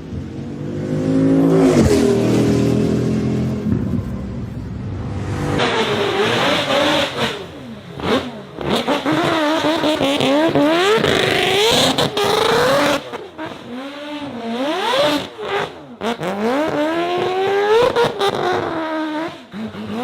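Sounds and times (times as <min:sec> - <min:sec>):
engine revving hard: 0:05.0 - 0:20.0.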